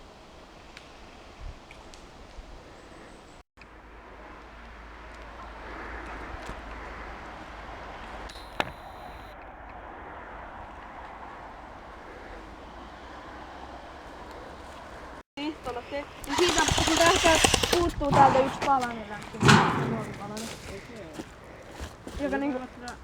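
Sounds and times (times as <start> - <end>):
steady outdoor hiss: 0.0 - 18.0.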